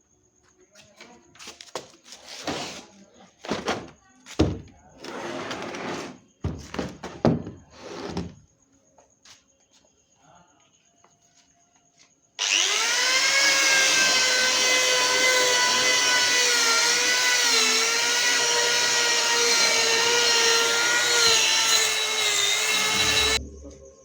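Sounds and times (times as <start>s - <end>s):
electric sander whining: 12.4s - 23.4s.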